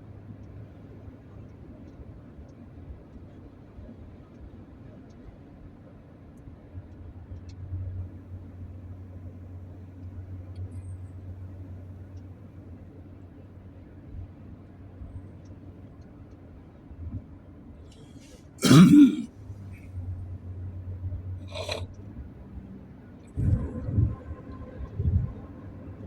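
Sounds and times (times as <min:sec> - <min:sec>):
car cabin hum: 0:06.7 - 0:17.8, 0:18.6 - 0:26.0
person coughing: 0:18.6 - 0:19.3, 0:21.5 - 0:21.8
small throat sound: 0:18.6 - 0:19.3, 0:21.4 - 0:22.0.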